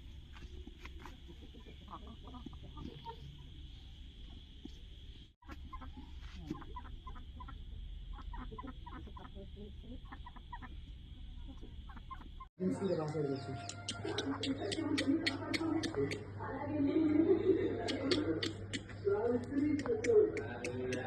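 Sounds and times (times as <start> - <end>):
steady high hum: 0.0 - 21.0
chickens clucking softly: 0.8 - 3.5, 5.4 - 12.5.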